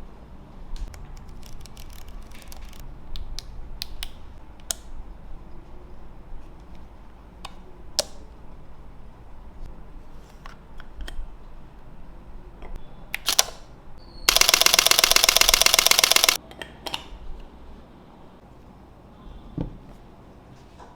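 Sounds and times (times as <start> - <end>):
camera shutter burst: 13.2 - 13.6, 14.3 - 16.4.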